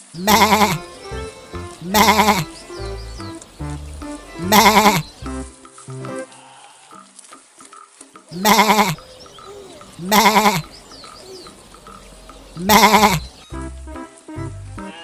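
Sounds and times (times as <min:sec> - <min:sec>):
goat bleating: 0:00.2 - 0:03.5, 0:04.1 - 0:05.2, 0:08.3 - 0:13.6
background music with low beat: 0:00.8 - 0:06.3.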